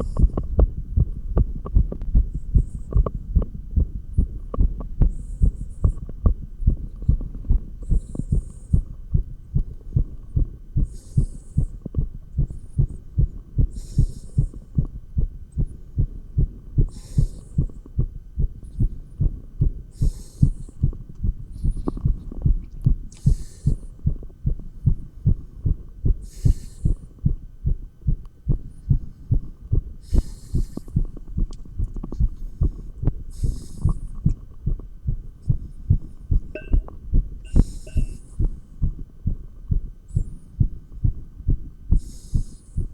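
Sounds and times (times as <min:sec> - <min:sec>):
heartbeat thumps: 0:00.0 - 0:42.9.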